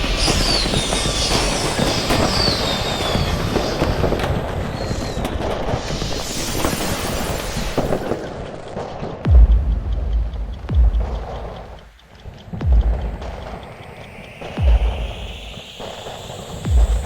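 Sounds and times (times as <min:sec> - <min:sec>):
falling firework whistle: 0:00.0 - 0:08.6, 0:13.0 - 0:17.0
fireworks crackling and popping: 0:00.0 - 0:17.0.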